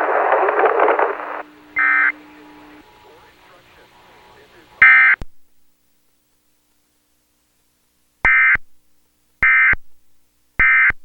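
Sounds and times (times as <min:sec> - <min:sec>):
shrill two-tone digital data bursts: 0:00.0 - 0:03.0.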